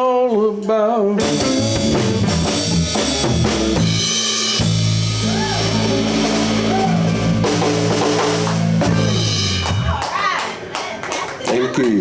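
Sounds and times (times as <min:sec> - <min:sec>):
bent electric guitar notes: 0:01.2 - 0:10.0
drum fills: 0:01.2 - 0:10.2
blues band playing: 0:01.2 - 0:11.3.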